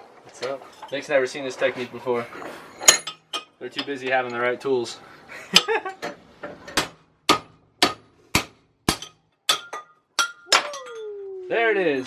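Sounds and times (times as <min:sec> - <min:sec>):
hammer striking metal: 0:06.7 - 0:10.9.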